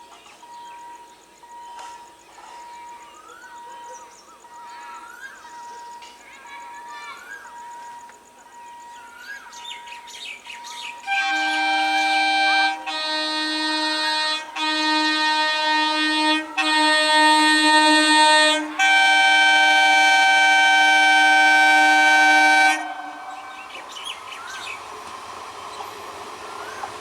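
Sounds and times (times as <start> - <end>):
approaching train noise: 10.9 - 27.0
locomotive horn blasts: 11.0 - 24.6
birds chirping: 21.7 - 24.9.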